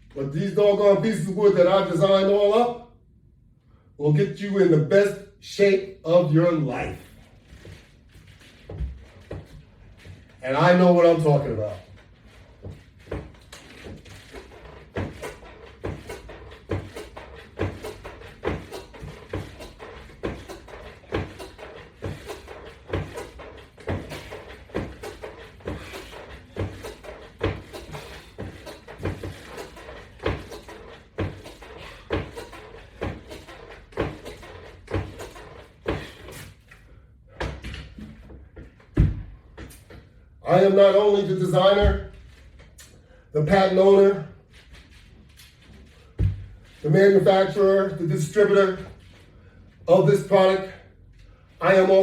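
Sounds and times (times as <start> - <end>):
wooden equipment knocking: 12.6 - 36.4.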